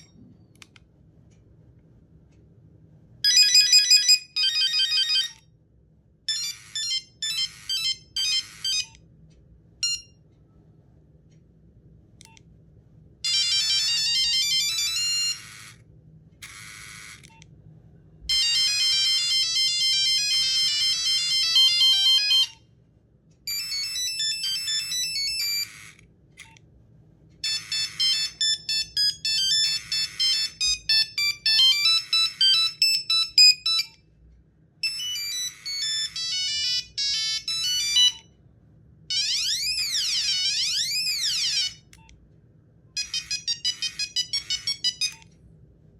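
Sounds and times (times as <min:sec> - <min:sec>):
monophonic phone ringtones: 0:03.2 - 0:05.4, 0:06.3 - 0:09.0, 0:13.2 - 0:15.8, 0:18.3 - 0:22.6, 0:23.5 - 0:26.0, 0:27.4 - 0:34.0, 0:34.8 - 0:38.3, 0:39.1 - 0:42.0, 0:43.0 - 0:45.3.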